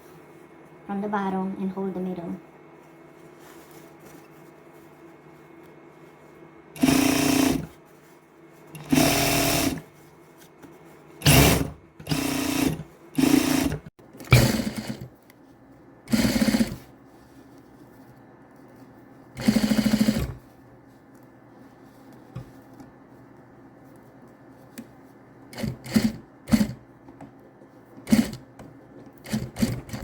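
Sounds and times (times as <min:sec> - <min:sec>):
electric sewing machine stitching: 0:06.8 - 0:07.8, 0:08.8 - 0:09.8, 0:11.2 - 0:15.1, 0:16.1 - 0:16.9, 0:19.4 - 0:20.4, 0:25.5 - 0:26.8, 0:28.0 - 0:28.5, 0:29.2 - 0:30.0.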